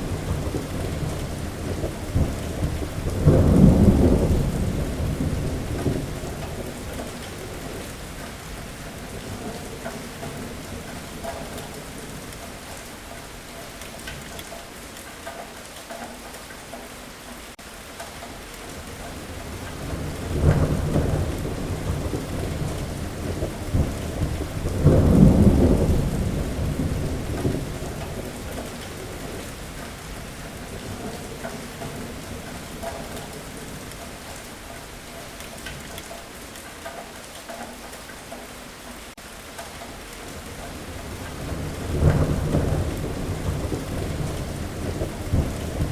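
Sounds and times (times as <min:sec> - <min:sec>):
thunder rolling: 0:00.0 - 0:12.3, 0:19.1 - 0:34.0, 0:40.4 - 0:45.9
heavy rain: 0:00.0 - 0:45.9.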